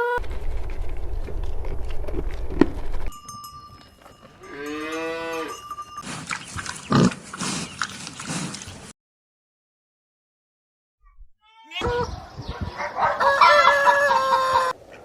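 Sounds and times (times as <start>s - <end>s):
wind rumble on microphone: 0.2s - 3.1s, 11.8s - 13.2s
cow mooing: 4.4s - 5.6s.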